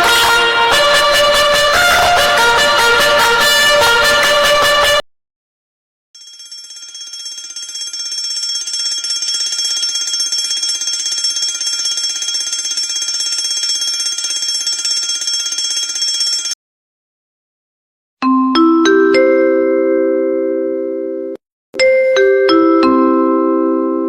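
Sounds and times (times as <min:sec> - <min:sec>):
alarm clock ringing: 0:06.2 - 0:16.6.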